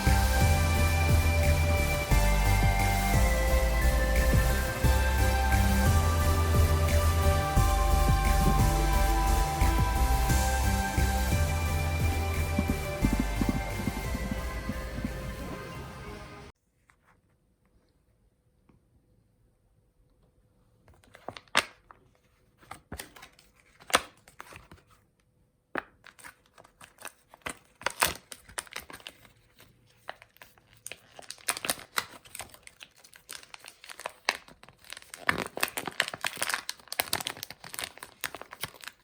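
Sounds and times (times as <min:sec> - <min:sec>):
crinkling and tearing: 0:26.0 - 0:39.0.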